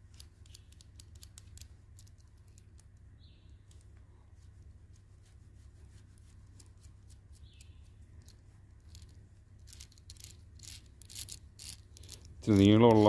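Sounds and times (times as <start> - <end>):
metal clicks of bolt and nut: 0.1 - 3.0, 6.6 - 13.0.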